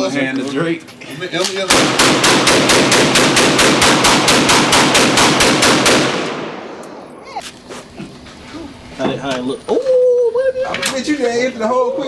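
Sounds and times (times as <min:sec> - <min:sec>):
pistol firing rapidly: 0:01.7 - 0:06.6.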